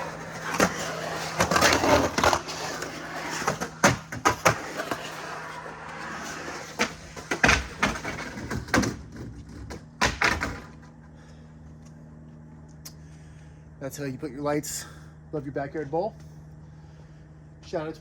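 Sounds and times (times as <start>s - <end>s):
skateboard wheel rumble: 0.0s - 11.0s
skateboard clacks and knocks: 3.2s - 5.0s, 6.8s - 10.7s.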